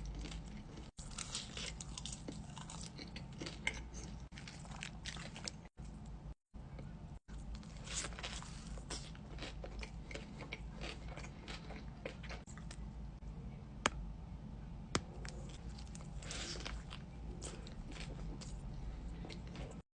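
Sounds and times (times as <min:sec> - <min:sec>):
chewing crunchy fried food: 0:00.0 - 0:06.0, 0:07.3 - 0:12.8, 0:15.2 - 0:19.8.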